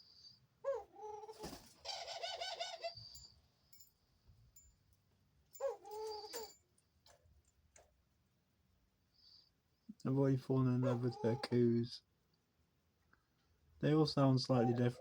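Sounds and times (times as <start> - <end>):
dove cooing: 0.6 - 3.2, 5.6 - 6.6.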